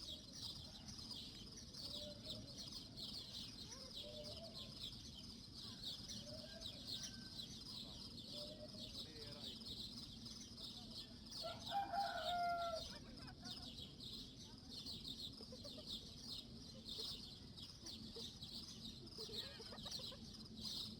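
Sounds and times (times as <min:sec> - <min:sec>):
rooster crowing: 0:11.4 - 0:12.9.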